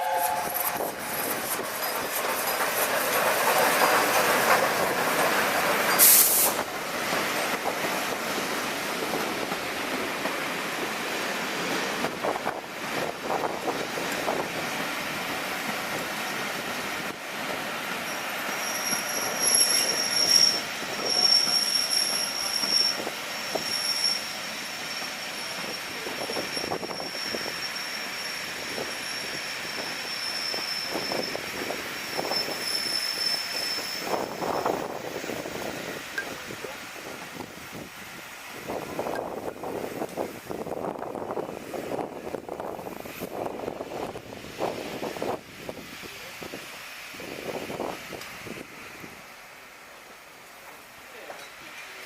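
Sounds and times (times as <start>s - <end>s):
train wheel squeal: 0.0s - 6.6s, 17.9s - 35.1s
train wheels on rails: 0.0s - 52.0s.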